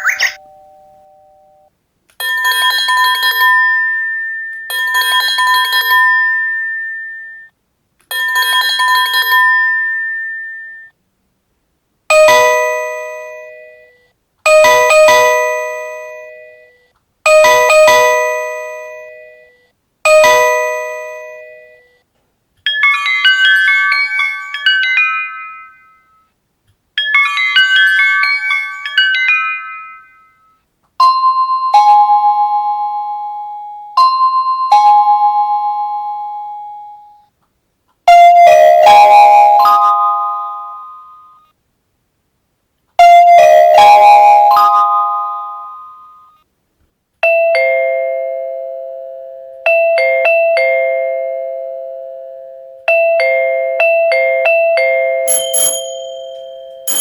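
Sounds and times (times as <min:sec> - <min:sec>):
electronic chime melodies: 0:00.0 - 0:01.7, 0:03.7 - 0:07.5, 0:55.3 - 0:57.0
struck doorbell chimes: 0:00.0 - 0:06.7, 0:54.5 - 0:57.0
electronic doorbell trilling: 0:00.0 - 0:07.5, 0:08.1 - 0:10.9, 0:54.2 - 0:57.0.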